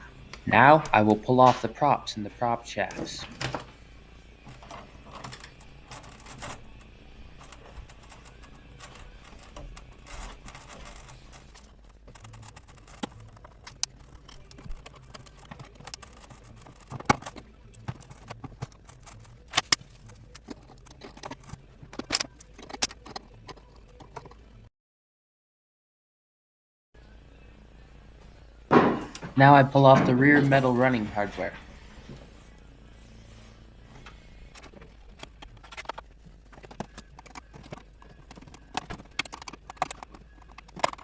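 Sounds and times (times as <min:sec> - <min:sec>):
small metal parts clinking: 0:04.4 - 0:24.4, 0:34.0 - 0:41.0.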